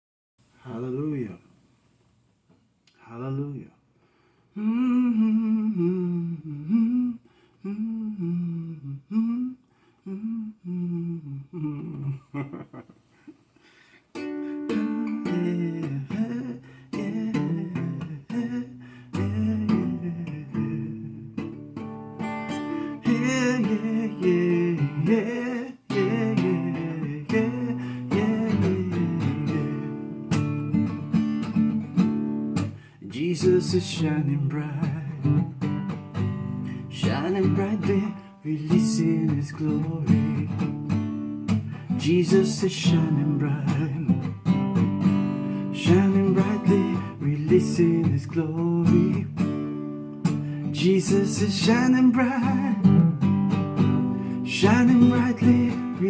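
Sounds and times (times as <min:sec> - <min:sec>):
person humming a slow melody: 0:04.6 - 0:12.7, 0:14.2 - 0:21.6, 0:22.4 - 0:30.4
acoustic guitar strumming: 0:14.1 - 0:56.0.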